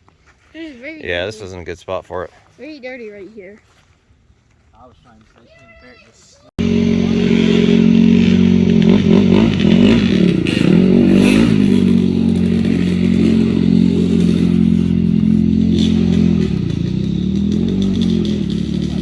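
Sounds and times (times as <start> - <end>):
boat engine droning: 6.6 - 19.0.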